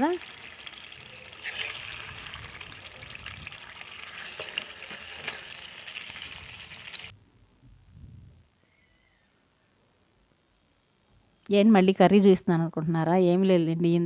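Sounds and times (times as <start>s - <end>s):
curry sizzling in oil: 0.0s - 7.1s.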